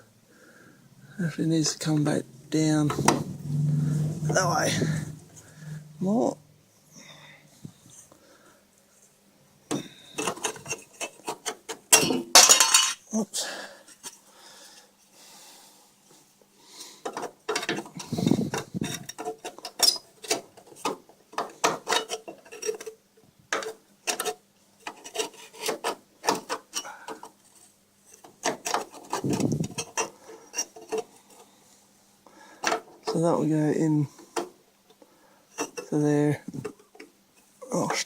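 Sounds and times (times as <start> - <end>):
sheet metal scraping and clinking: 1.8 - 5.9, 17.1 - 22.9, 28.1 - 31.3.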